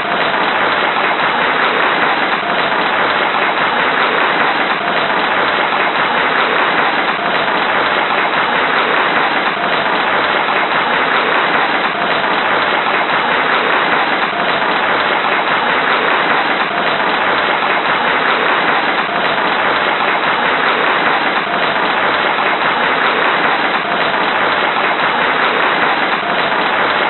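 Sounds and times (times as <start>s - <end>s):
crowd applauding: 0.0s - 27.0s.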